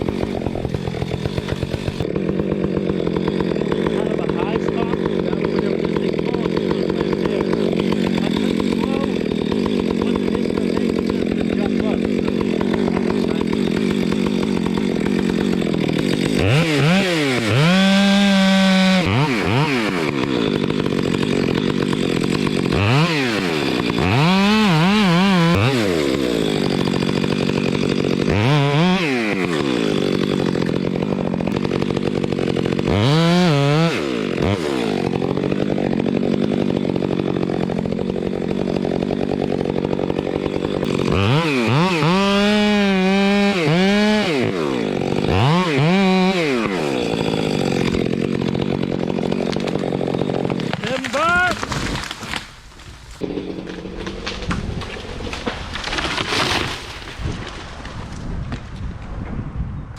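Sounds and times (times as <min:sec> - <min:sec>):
chainsaw revving and idling: 0:00.0 - 0:57.9.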